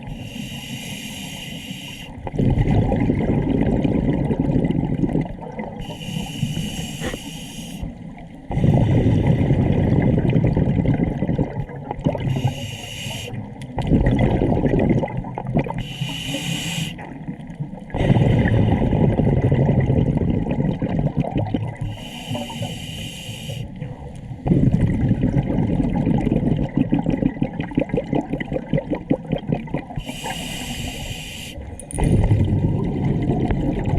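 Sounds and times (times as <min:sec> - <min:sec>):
diver inhaling through regulator: 0:00.0 - 0:02.2, 0:05.8 - 0:09.4, 0:12.2 - 0:13.5, 0:15.8 - 0:17.1, 0:17.9 - 0:19.0, 0:21.8 - 0:23.8, 0:30.0 - 0:31.7
exhaust bubbles rushing: 0:02.2 - 0:05.8, 0:08.5 - 0:12.3, 0:13.8 - 0:15.8, 0:17.2 - 0:21.9, 0:24.4 - 0:30.0, 0:32.0 - 0:33.9.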